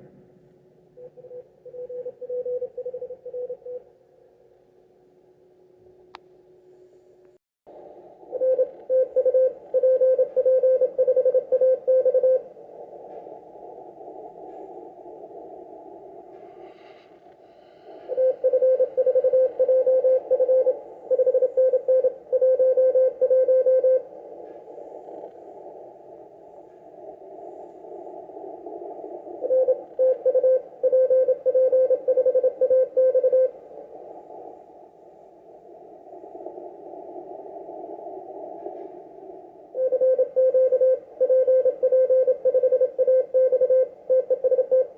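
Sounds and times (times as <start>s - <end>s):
morse code tone: 29.6s - 33.5s, 39.8s - 44.9s.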